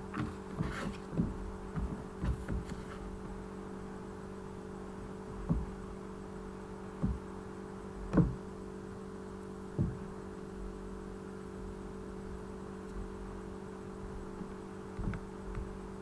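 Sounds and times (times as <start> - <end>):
steady low hum: 0.0 - 16.0
soft knocks: 0.1 - 3.4, 5.4 - 5.8, 7.0 - 7.3, 8.1 - 8.4, 9.7 - 10.1.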